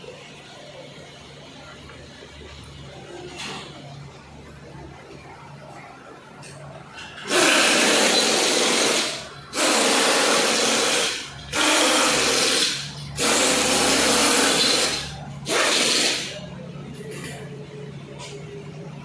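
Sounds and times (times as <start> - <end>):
power tool running: 7.2 - 16.4.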